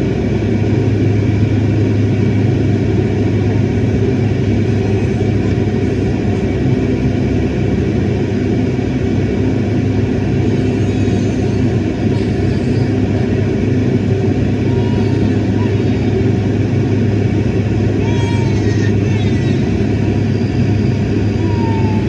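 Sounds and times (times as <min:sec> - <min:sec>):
jet engine cabin drone: 0:00.0 - 0:22.0.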